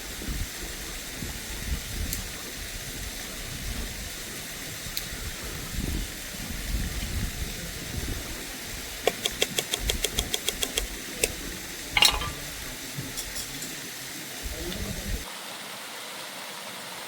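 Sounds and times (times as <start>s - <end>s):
waterfall rushing: 0.0s - 15.7s
rapid clicks: 9.0s - 11.4s
ringing clatter: 12.0s - 12.4s.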